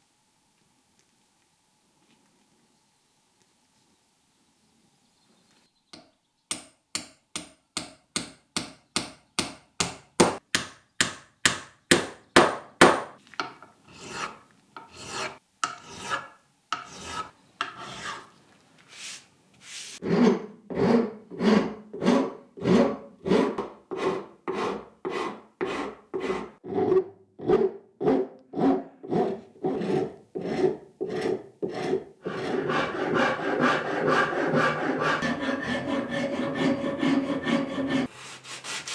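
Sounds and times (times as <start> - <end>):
hand filing scraping strokes: 13.9 - 38.9.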